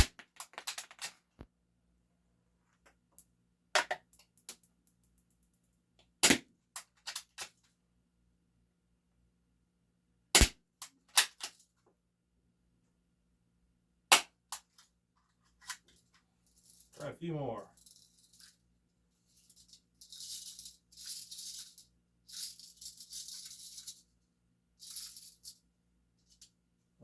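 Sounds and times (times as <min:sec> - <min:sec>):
airsoft pistol shots: 0:10.4 - 0:10.6.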